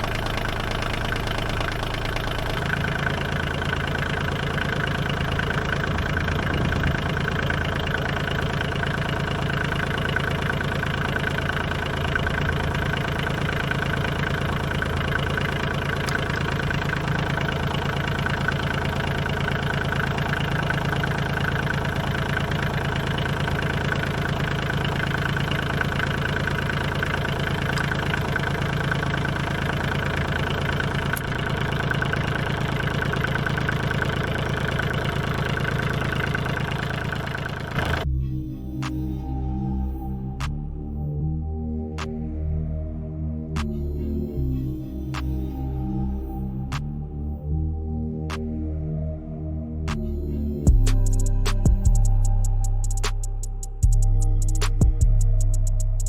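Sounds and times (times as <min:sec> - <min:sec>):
diesel tractor engine idling: 0:00.0 - 0:38.3, 0:49.9 - 0:56.0.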